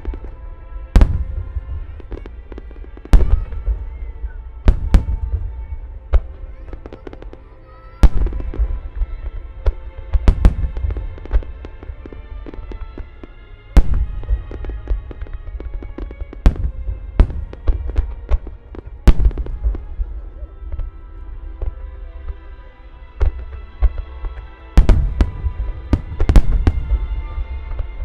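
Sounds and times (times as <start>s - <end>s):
music playing: 0.0s - 28.0s
firework booms: 1.0s - 7.4s, 8.0s - 12.7s, 13.8s - 20.9s, 24.8s - 27.9s.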